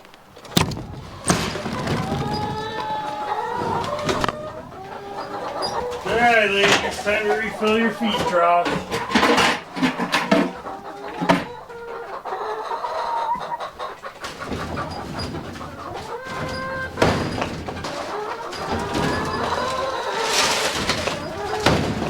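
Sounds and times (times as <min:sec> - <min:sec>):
hens clucking: 0:00.0 - 0:22.0
sharp knocks: 0:20.6 - 0:22.0.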